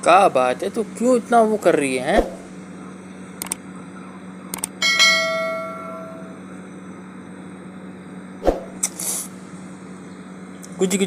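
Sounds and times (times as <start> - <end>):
steady low hum: 0.0 - 11.0
short clicks: 3.4 - 3.6, 4.5 - 4.8
small bell ringing: 4.8 - 6.4.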